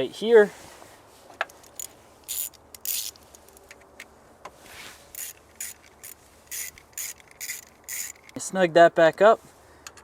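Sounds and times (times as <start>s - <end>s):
socket ratchet clicking: 1.7s - 3.8s, 5.2s - 8.4s.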